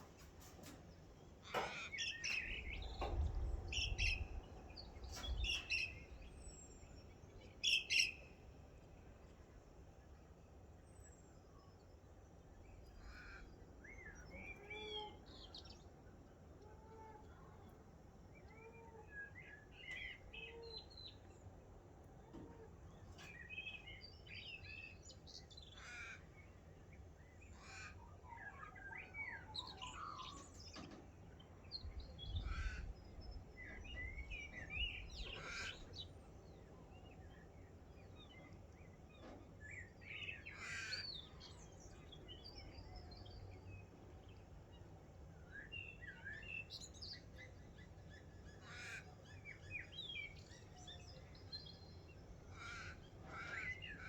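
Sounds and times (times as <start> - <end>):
birds chirping and calling: 31.9 - 36.3.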